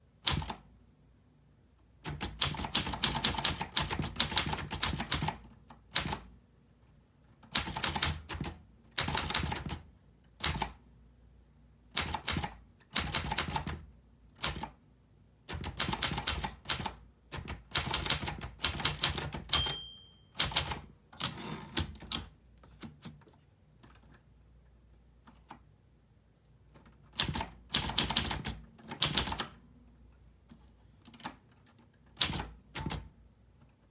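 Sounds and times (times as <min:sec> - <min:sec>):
typewriter key strikes: 0:17.4 - 0:22.2
typewriter bell ring: 0:19.4 - 0:20.8.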